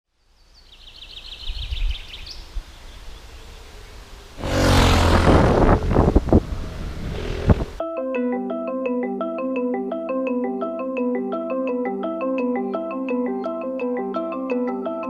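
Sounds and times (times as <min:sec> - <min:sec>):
motorcycle engine running: 0:04.4 - 0:07.8.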